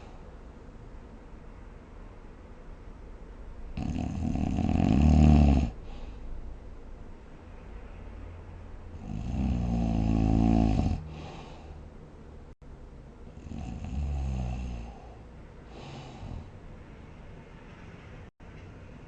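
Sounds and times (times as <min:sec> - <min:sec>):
person snoring: 0:03.8 - 0:06.1, 0:09.0 - 0:11.7, 0:13.4 - 0:16.5
airy breath: 0:05.8 - 0:06.4, 0:11.0 - 0:11.9, 0:14.8 - 0:16.6.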